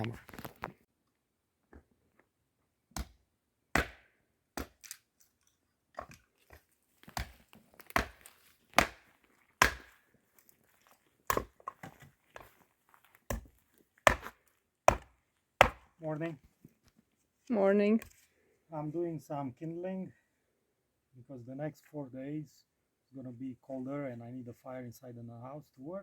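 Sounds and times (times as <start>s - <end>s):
wood chopping strikes: 2.9s - 5.0s, 7.0s - 10.0s, 11.3s - 12.5s, 13.3s - 15.9s.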